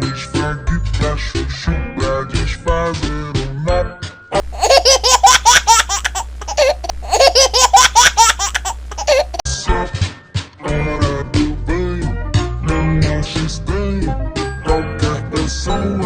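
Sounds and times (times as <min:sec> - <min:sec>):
high-pitched laughter: 0:04.4 - 0:09.4.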